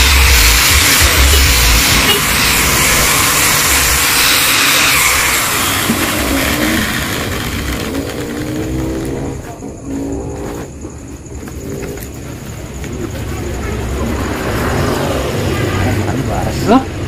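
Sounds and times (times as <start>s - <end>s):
power grinder grinding steel: 0.0s - 9.4s.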